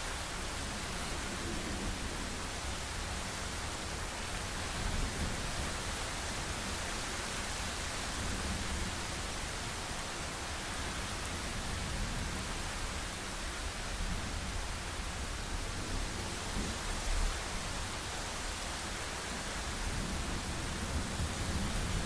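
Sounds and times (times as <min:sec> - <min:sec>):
heavy rain falling: 0:00.0 - 0:22.0.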